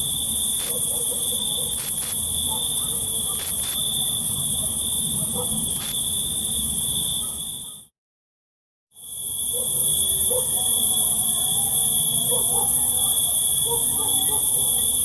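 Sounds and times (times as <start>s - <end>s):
insect hiss: 0.0s - 7.8s, 9.0s - 15.0s
crickets trilling: 0.0s - 7.9s, 9.0s - 15.0s
sharp chirps: 0.5s - 0.9s, 1.7s - 2.3s, 3.3s - 3.8s, 5.8s - 6.0s.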